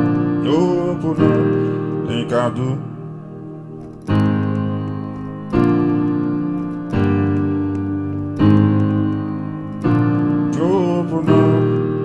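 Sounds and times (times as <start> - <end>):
keyboard playing held chords: 0.0 - 12.0.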